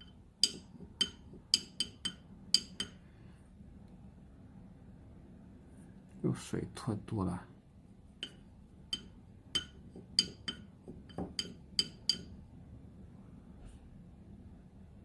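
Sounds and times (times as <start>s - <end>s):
paintbrush clinking on porcelain dish: 0.0s - 3.0s, 8.2s - 12.4s.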